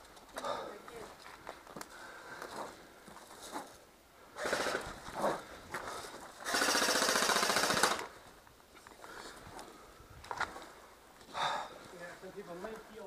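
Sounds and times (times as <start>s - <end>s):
airsoft gun firing bursts: 4.4s - 4.8s, 6.4s - 8.1s.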